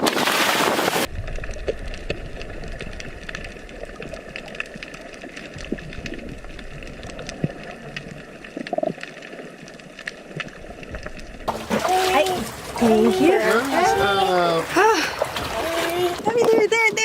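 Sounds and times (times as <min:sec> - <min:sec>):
crackling clicks: 0:00.0 - 0:11.5
steady low underwater hum: 0:01.1 - 0:16.3.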